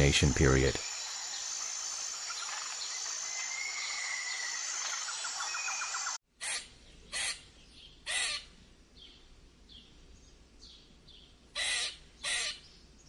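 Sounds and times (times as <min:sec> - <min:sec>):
harsh bird calls: 0:11.6 - 0:12.8.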